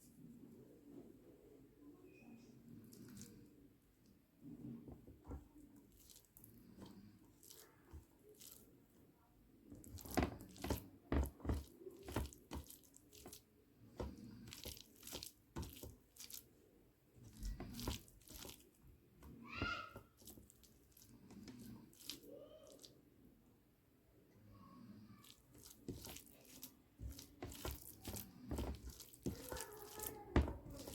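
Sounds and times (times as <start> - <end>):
person chewing rice: 5.9 - 8.7, 11.5 - 16.5, 17.2 - 18.8, 20.2 - 22.9, 25.2 - 30.9.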